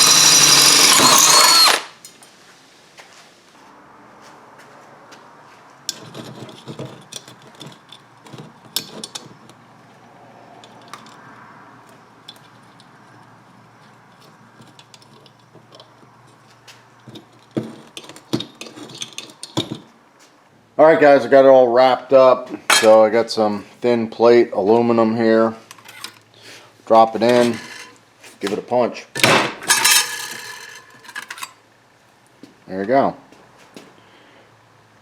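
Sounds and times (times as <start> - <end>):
metal tools clinking: 22.7 - 23.0, 25.7 - 26.2, 27.2 - 28.0, 29.6 - 31.6.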